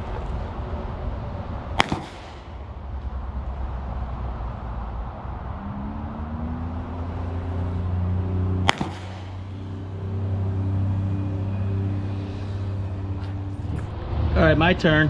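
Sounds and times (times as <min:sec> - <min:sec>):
low engine drone: 0:00.0 - 0:15.0
pistol shot: 0:01.8 - 0:02.6, 0:08.7 - 0:09.4.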